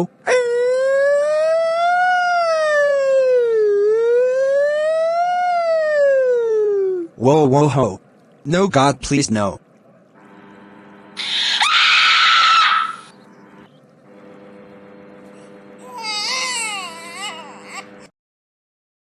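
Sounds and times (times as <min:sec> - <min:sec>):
high wavering crying-like voice: 0:00.0 - 0:07.2, 0:11.2 - 0:13.1, 0:15.8 - 0:18.1
low hum: 0:00.1 - 0:18.1.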